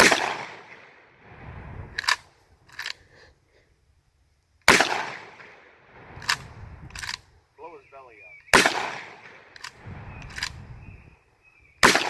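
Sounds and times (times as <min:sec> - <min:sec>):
shotgun shots echoing: 0:00.0 - 0:01.0, 0:04.7 - 0:06.4, 0:08.5 - 0:10.5, 0:11.8 - 0:12.0
shotgun pump racking clacks: 0:02.0 - 0:03.0, 0:06.2 - 0:07.2.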